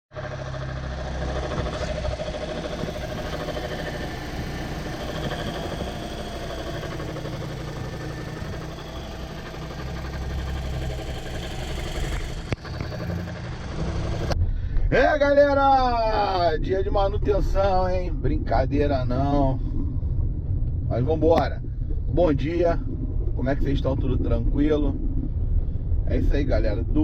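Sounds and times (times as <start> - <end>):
car engine humming: 0.1 - 26.8.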